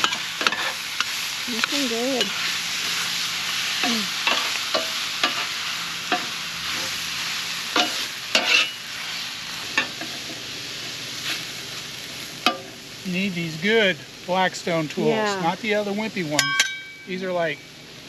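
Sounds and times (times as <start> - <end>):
food sizzling on a griddle: 0.0 - 18.0
metal spatula scraping griddle: 7.7 - 8.8.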